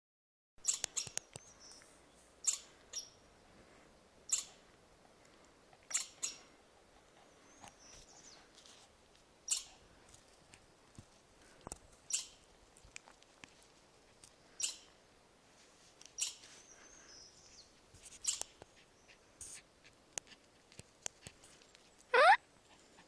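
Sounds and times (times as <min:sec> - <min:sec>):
chipmunk chipping: 0:00.6 - 0:01.6, 0:02.4 - 0:03.2, 0:04.3 - 0:04.6, 0:05.9 - 0:06.6, 0:09.5 - 0:09.8, 0:12.1 - 0:12.4, 0:14.6 - 0:14.9, 0:16.1 - 0:16.4, 0:18.2 - 0:18.7.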